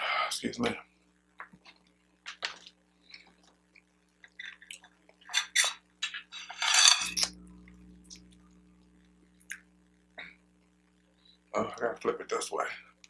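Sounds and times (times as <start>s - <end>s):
tableware clicks and taps: 5.3s - 7.3s
low hum: 6.6s - 11.4s.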